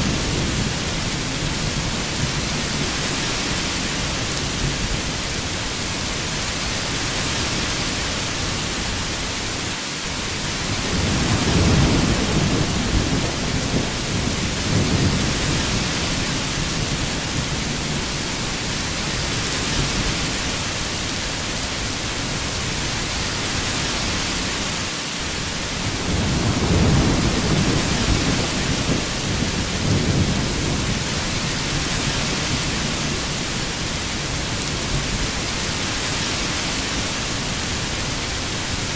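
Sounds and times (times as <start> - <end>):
heavy rain falling: 0.0 - 38.9
low rolls of thunder: 10.7 - 18.2, 25.8 - 33.5.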